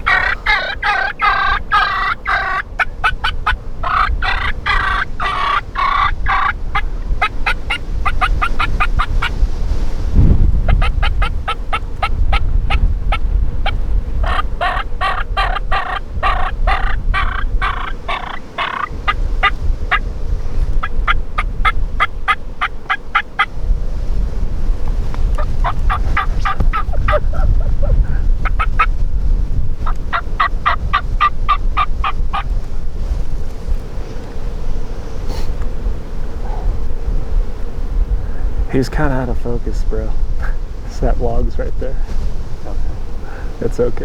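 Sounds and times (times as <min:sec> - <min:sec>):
turkeys gobbling: 0:00.0 - 0:09.4, 0:10.6 - 0:20.0, 0:20.8 - 0:23.6, 0:25.4 - 0:29.0, 0:29.8 - 0:32.5
low wind rumble on microphone: 0:00.0 - 0:44.0.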